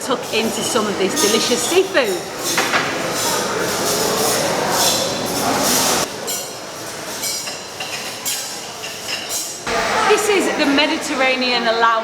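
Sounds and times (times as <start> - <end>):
restaurant hubbub: 0.0 - 12.0
dishes and cutlery clinking: 0.1 - 9.7.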